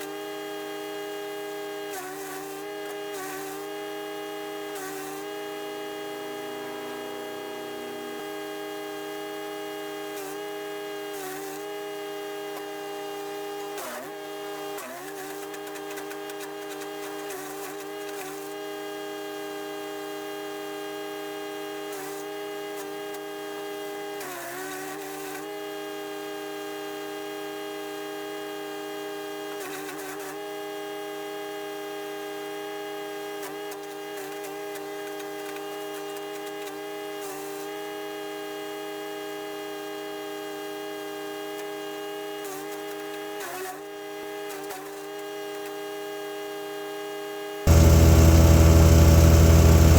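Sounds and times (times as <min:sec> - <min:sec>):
branches going through chipper: 0:47.7 - 0:49.9
wood chipper engine running: 0:47.7 - 0:49.9.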